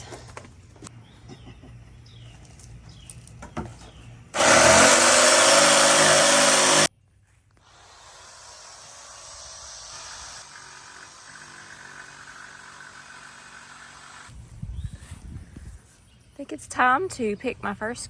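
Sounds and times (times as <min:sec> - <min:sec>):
power tool running: 0:04.4 - 0:06.9, 0:07.6 - 0:14.3.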